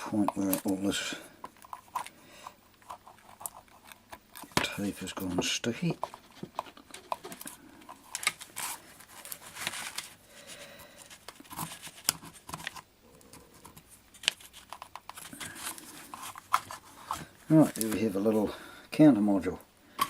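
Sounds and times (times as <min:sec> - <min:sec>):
tape tearing and crinkling: 0:06.0 - 0:12.8.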